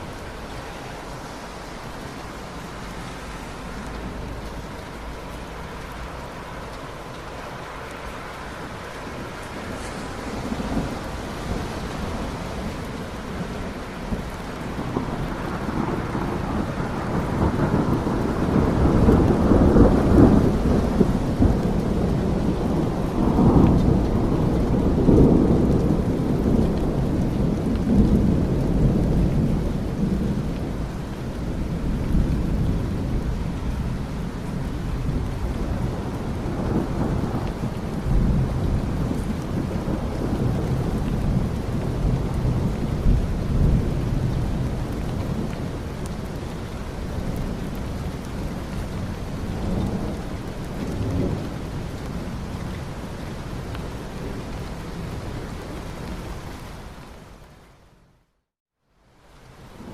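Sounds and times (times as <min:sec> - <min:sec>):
rain falling: 0:00.0 - 0:59.9
thunder rolling: 0:09.1 - 0:46.0.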